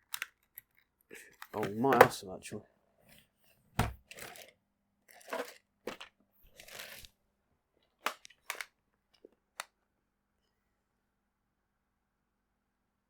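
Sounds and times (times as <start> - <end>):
plastic rustling: 3.8 - 4.5, 5.1 - 7.1, 8.0 - 8.7.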